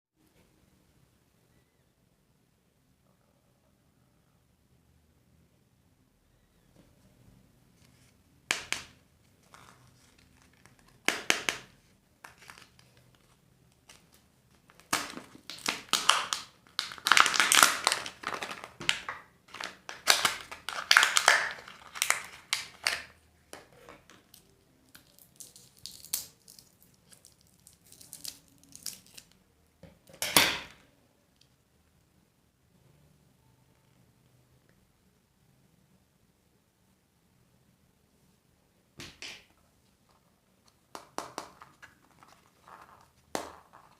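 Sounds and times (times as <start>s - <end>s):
candy wrappers crinkling and tearing: 12.3s - 23.2s, 24.2s - 29.4s.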